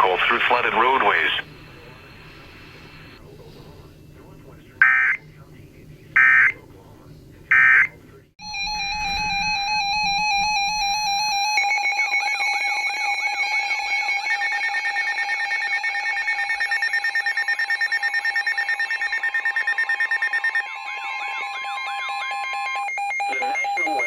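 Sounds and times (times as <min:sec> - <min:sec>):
weather alert radio alarms: 0:00.0 - 0:03.2, 0:06.2 - 0:06.6, 0:07.5 - 0:24.0
fast pulsing beep: 0:07.6 - 0:24.0.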